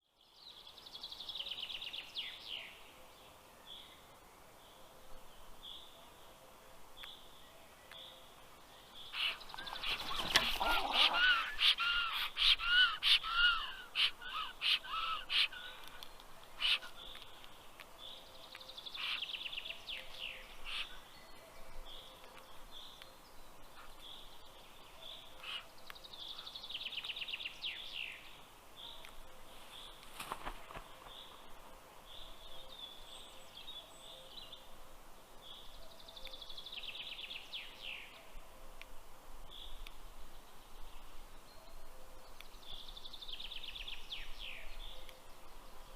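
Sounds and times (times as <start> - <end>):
songbirds trilling: 0.3 - 38.9
stork chicks raspy calls: 9.2 - 15.7.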